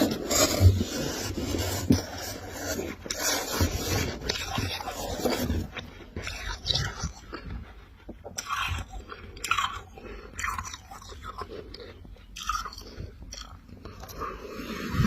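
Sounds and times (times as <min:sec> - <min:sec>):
person crunching frost: 0:00.0 - 0:07.4.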